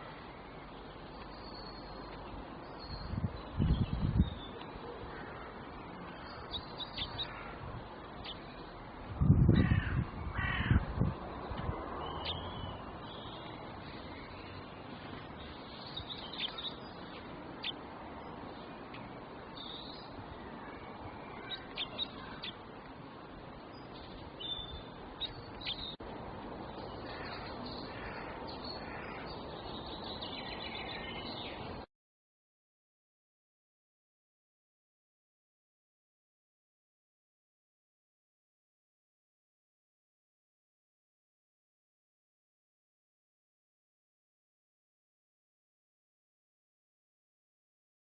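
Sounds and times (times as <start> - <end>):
birds calling: 0.0 - 8.9, 9.6 - 31.8
steady background hiss: 0.0 - 9.4, 10.0 - 31.9.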